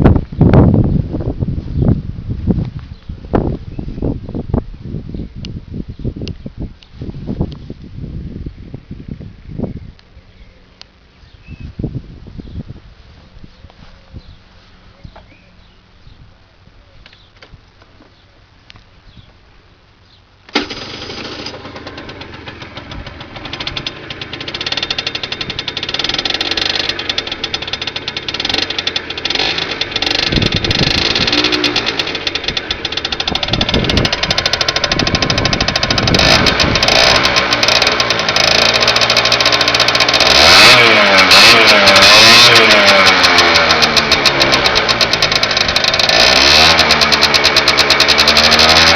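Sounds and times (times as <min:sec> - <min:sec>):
scooter engine revving: 0:20.5 - 0:48.9.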